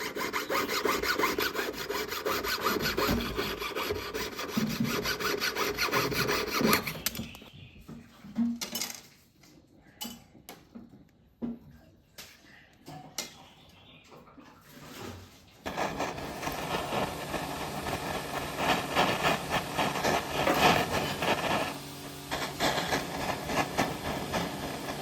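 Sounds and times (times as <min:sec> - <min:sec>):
small motor tool scraping metal: 0:00.0 - 0:07.2, 0:15.7 - 0:25.0.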